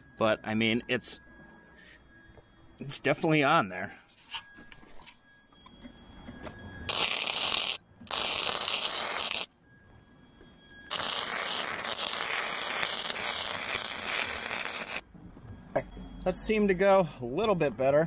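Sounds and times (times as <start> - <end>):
welder arc crackling: 6.9 - 9.5, 10.9 - 15.0.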